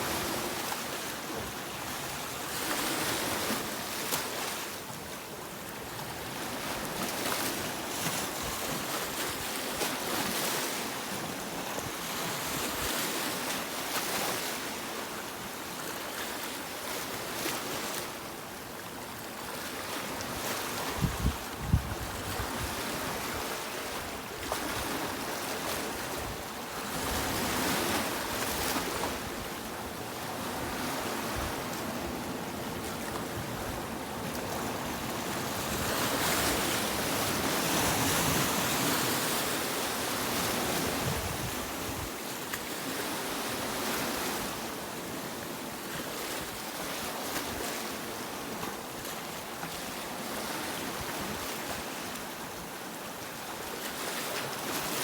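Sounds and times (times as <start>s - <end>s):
sea waves washing onto beach: 16.5s - 55.0s.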